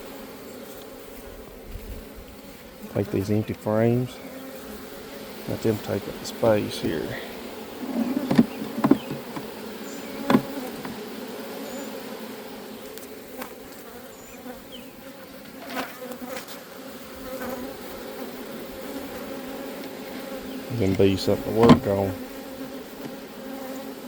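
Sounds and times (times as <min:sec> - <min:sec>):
bees buzzing: 0:00.0 - 0:24.0
wooden frames knocking: 0:07.8 - 0:09.6, 0:10.2 - 0:11.0, 0:20.9 - 0:22.0.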